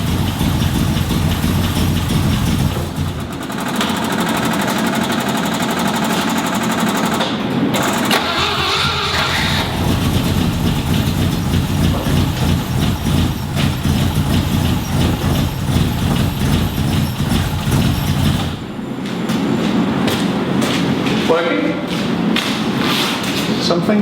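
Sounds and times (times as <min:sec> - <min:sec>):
car engine rumbling: 0:00.0 - 0:20.5.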